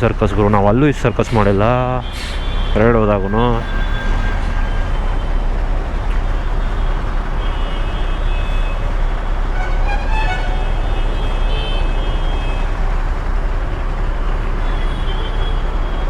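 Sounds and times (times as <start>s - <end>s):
engines and road noise rumble: 0.0s - 16.0s
vehicle horns: 1.0s - 5.5s, 6.4s - 12.8s.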